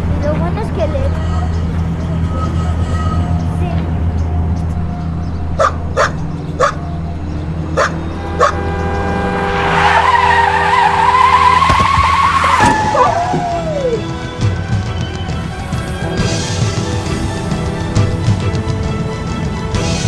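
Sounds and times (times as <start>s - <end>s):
low vehicle hum: 0.0s - 19.1s
car tyres screeching: 4.8s - 14.6s.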